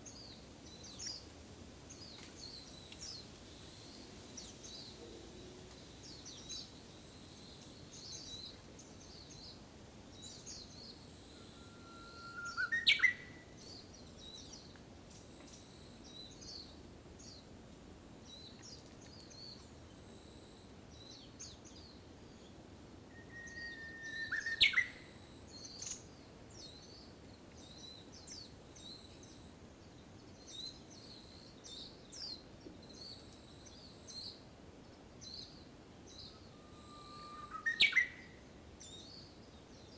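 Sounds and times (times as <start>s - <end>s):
bird whistling song: 11.2s - 13.5s, 23.1s - 26.0s, 36.2s - 39.2s
faint high chirps: 36.3s - 38.4s.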